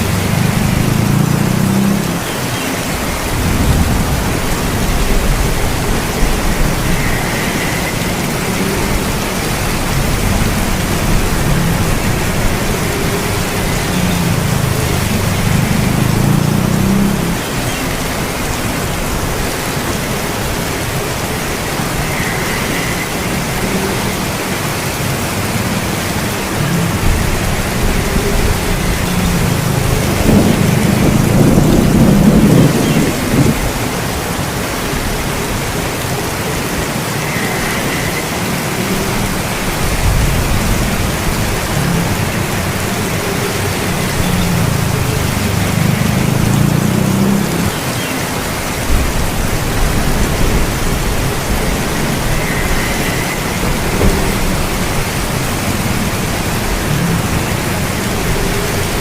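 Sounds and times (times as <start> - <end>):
heavy rain: 0.0 - 59.0
thunder rolling: 3.0 - 34.3, 48.8 - 59.0.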